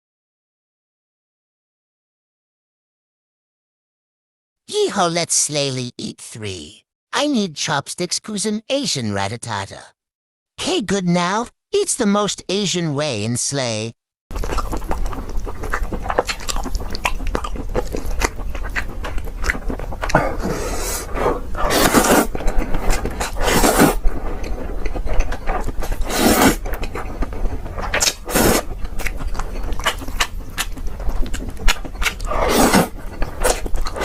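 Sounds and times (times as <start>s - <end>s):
chewing and mouth clicks: 14.3s - 20.9s, 21.5s - 34.0s
food crunching: 14.3s - 34.0s.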